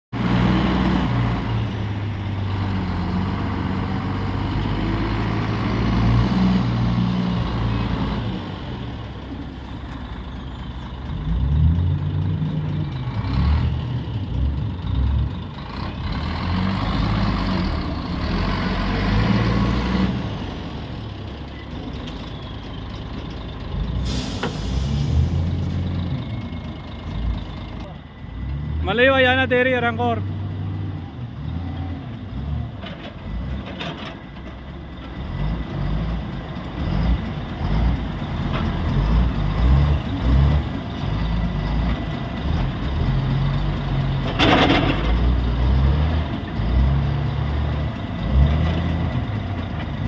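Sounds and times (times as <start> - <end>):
diesel engine revving: 0.1 - 50.0.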